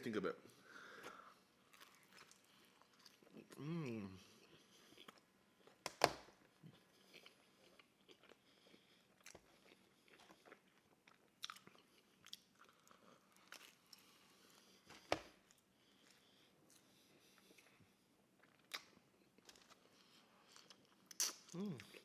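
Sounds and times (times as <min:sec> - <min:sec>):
person chewing food: 0:01.0 - 0:03.6, 0:04.2 - 0:22.0
wet mouth clicks: 0:21.1 - 0:21.6.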